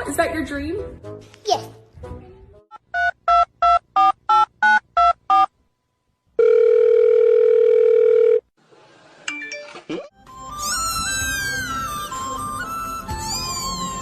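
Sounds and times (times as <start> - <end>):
phone ringing tone: 6.4 - 8.5.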